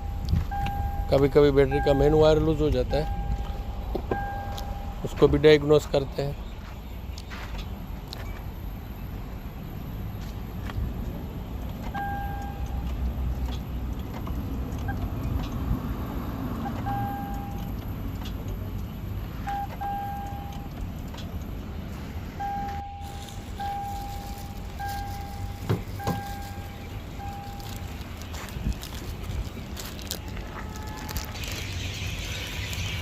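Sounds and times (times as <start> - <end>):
electronic beeper tone: 0.0 - 5.3, 22.4 - 27.9.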